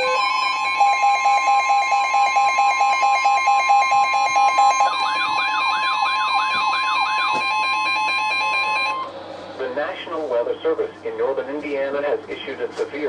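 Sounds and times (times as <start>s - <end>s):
long warning alarm tone: 0.0s - 9.5s.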